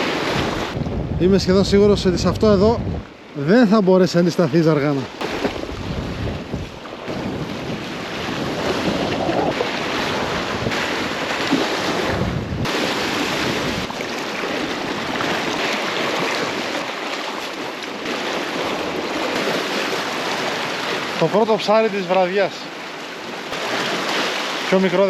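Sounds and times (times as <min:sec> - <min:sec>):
wind buffeting microphone: 0:00.0 - 0:03.4, 0:05.0 - 0:21.2
sea waves washing on shore: 0:00.0 - 0:25.0.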